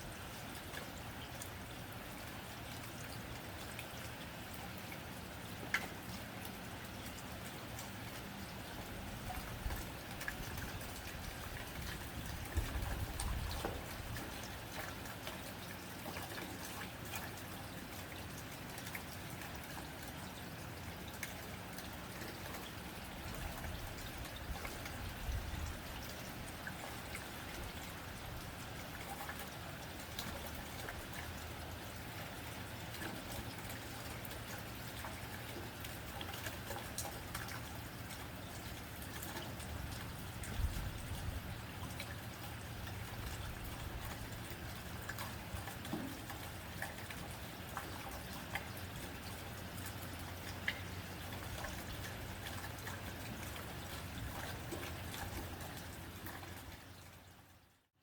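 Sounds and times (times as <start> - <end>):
rain on a tin roof: 0.0 - 58.0.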